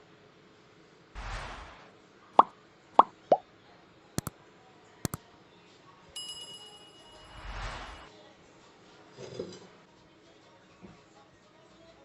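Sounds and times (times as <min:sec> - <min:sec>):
ringing bell chime: 0:06.2 - 0:07.5.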